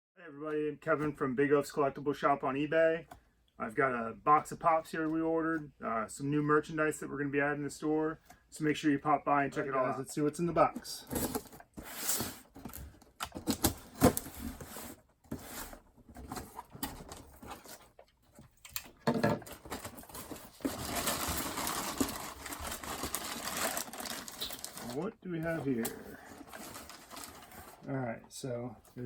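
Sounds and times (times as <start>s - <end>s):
rustling and crinkling: 10.6s - 28.0s
box being unpacked by hand: 11.0s - 18.2s, 19.3s - 25.0s, 25.8s - 27.9s.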